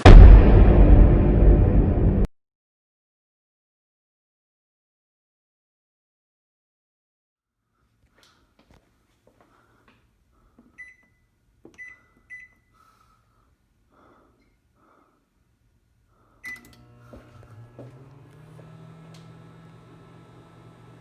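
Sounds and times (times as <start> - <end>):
microwave keypad beeps: 10.8 - 11.2, 11.8 - 12.7, 16.4 - 16.8
microwave oven humming: 16.4 - 21.0.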